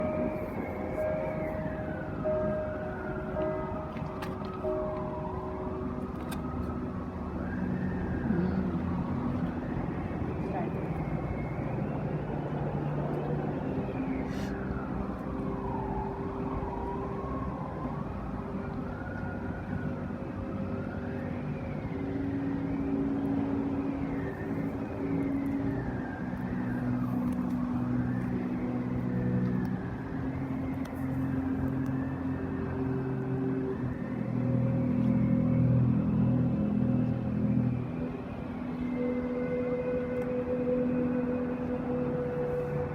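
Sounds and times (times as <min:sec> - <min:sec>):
high wavering tone: 0:00.0 - 0:06.0
low drone tones: 0:00.0 - 0:42.9.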